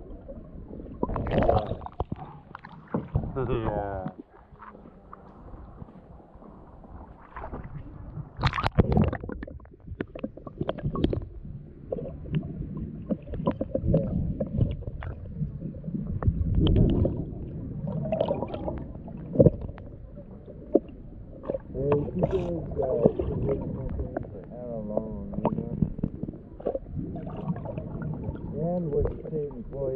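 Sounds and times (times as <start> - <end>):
water sloshing and gurgling: 0.0 - 29.9
paddle knocks and splashes: 1.0 - 3.4, 7.2 - 11.3.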